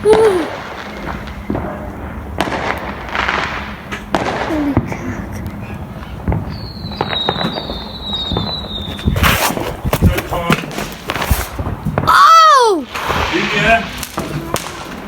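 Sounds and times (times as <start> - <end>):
fireworks bangs and crackles: 0.0 - 15.0
high firework whistle: 6.3 - 9.6.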